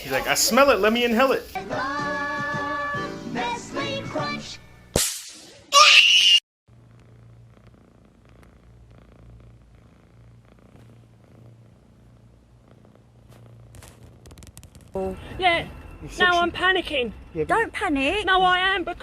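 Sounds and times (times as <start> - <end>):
cat crying harshly: 5.8 - 6.4
cat purring: 6.7 - 19.0.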